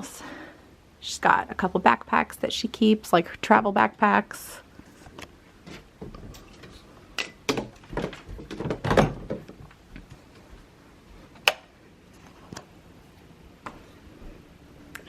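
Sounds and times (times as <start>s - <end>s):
door knocks and thuds: 7.5s - 9.6s.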